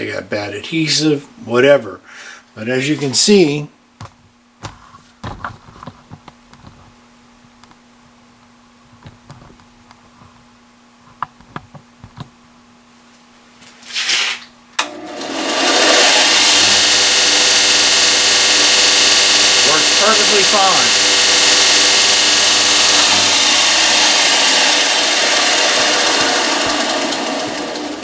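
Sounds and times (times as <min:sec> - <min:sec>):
belt sander running: 0:14.8 - 0:28.0.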